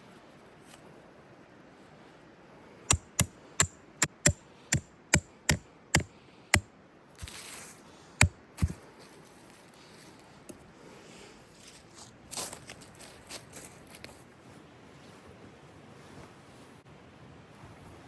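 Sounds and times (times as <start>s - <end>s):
blade chopping wood: 2.9s - 6.1s, 8.2s - 8.8s.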